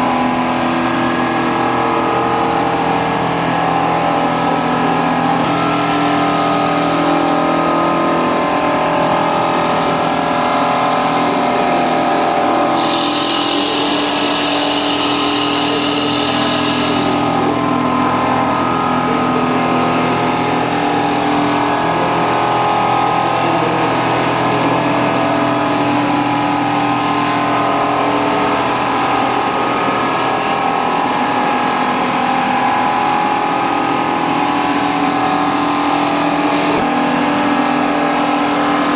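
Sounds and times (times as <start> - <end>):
quilting machine humming: 4.2 - 24.3
high hiss: 12.8 - 17.3.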